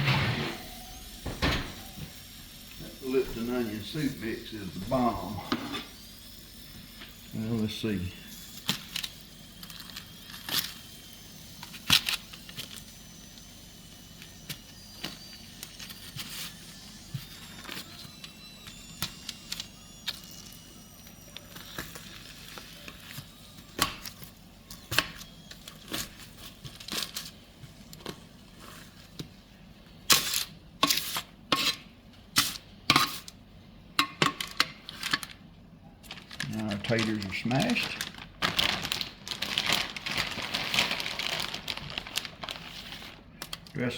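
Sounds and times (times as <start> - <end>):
crinkling: 34.4 - 43.9.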